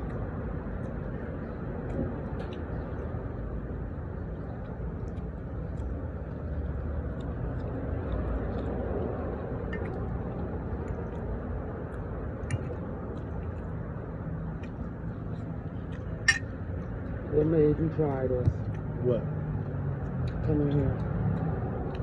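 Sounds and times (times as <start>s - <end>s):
cutlery and dishes clinking: 16.3s - 16.5s.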